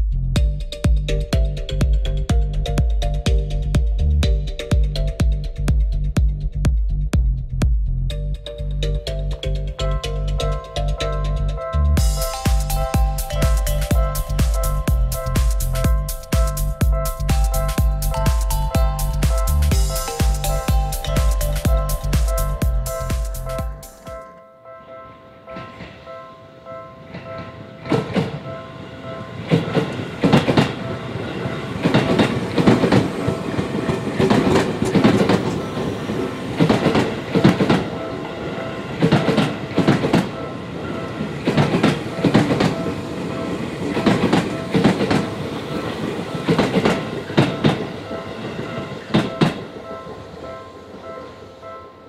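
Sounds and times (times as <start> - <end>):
crossing warning bell dinging: 8.2 - 52.0
train rumble: 10.0 - 24.1, 27.1 - 51.8
train wheels clattering: 27.2 - 28.6, 29.3 - 38.3, 38.9 - 50.5.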